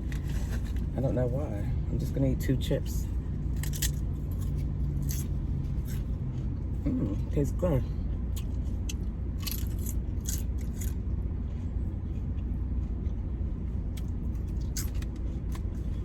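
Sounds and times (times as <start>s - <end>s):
low hum: 0.0s - 16.0s
chips crunching while chewed: 3.5s - 7.4s, 8.1s - 16.0s.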